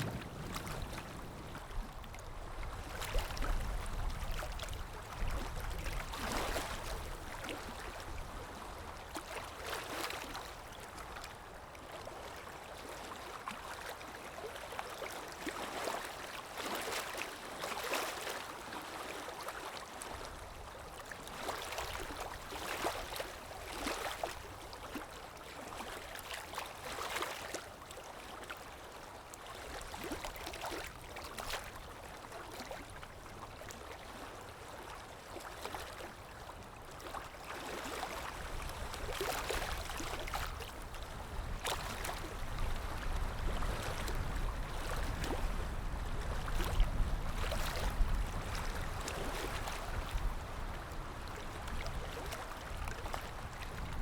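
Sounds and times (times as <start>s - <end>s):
low rumble: 0.0s - 1.7s
sea waves washing in: 0.0s - 3.4s.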